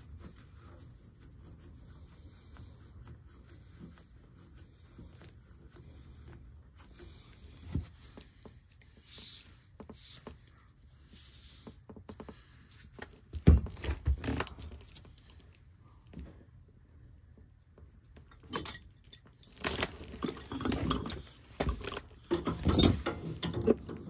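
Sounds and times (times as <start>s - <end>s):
tools scraping and clicking: 18.2s - 24.0s
knocks and clatter of metal: 18.4s - 24.0s.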